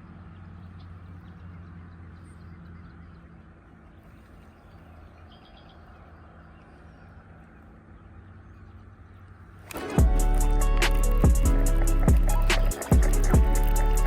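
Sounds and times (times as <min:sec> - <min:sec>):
faint bird chirps: 0:00.3 - 0:09.6.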